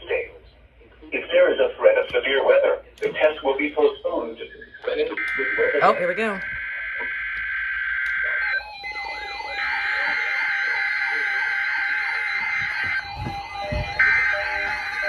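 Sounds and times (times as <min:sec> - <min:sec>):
fast warbling siren-like tone: 0:05.4 - 0:15.0
steady high electronic tone: 0:08.2 - 0:15.0.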